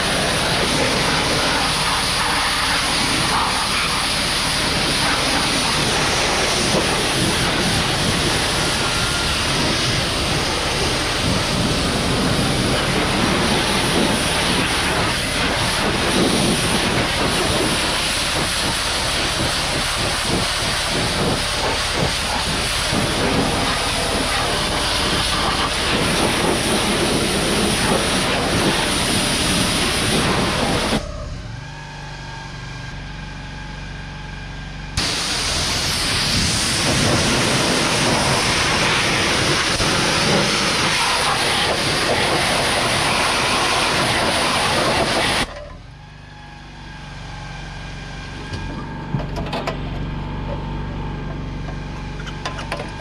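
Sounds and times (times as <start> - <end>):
loud steady hissing: 0.0 - 31.1, 35.0 - 45.5
machine hum: 0.0 - 53.0.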